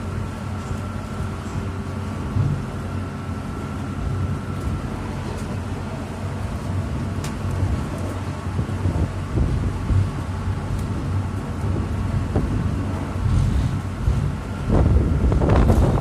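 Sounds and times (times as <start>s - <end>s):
ferry engine humming: 0.0s - 16.0s
wind buffeting microphone: 3.6s - 16.0s.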